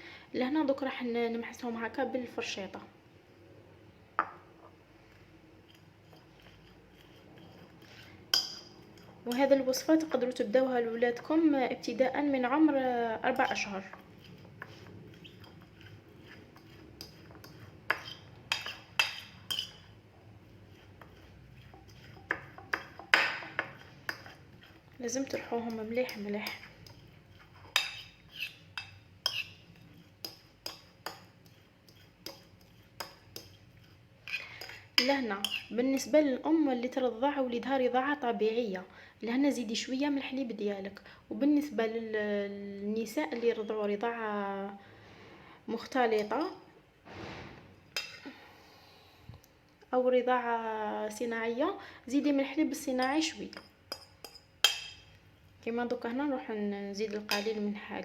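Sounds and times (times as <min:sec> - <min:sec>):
fork mashing garlic: 0:05.6 - 0:10.1, 0:12.6 - 0:36.1, 0:53.0 - 0:55.2.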